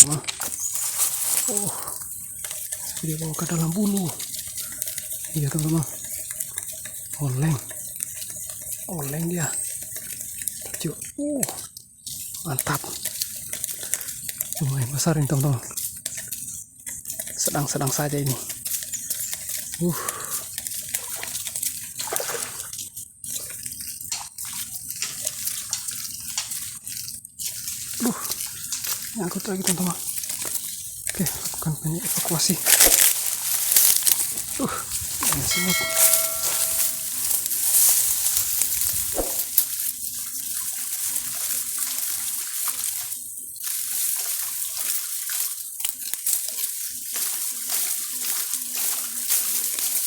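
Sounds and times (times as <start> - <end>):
small crackling clicks: 0.0 - 50.0
water sloshing and rushing: 21.0 - 22.8.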